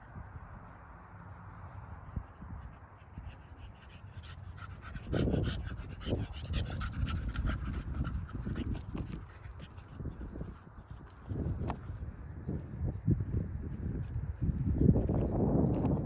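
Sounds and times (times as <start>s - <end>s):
animal panting: 1.6s - 11.9s.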